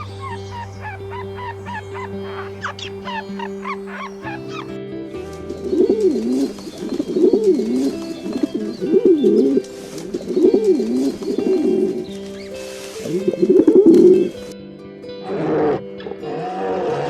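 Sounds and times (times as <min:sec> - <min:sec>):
pigeon cooing: 0:00.0 - 0:04.8, 0:05.7 - 0:14.4
background music: 0:00.0 - 0:17.0.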